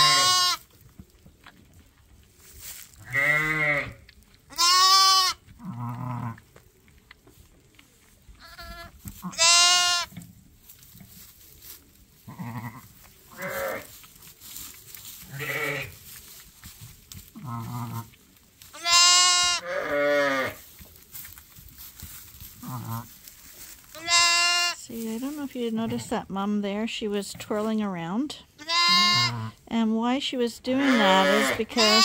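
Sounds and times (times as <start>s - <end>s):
lambs bleating: 0.0s - 0.7s, 3.0s - 6.4s, 8.4s - 10.1s, 12.3s - 14.0s, 15.2s - 16.0s, 17.4s - 18.1s, 18.7s - 20.6s, 22.6s - 23.1s, 23.9s - 24.8s, 28.6s - 29.6s, 30.8s - 32.0s
ewe calling softly: 8.4s - 10.1s, 28.6s - 29.4s.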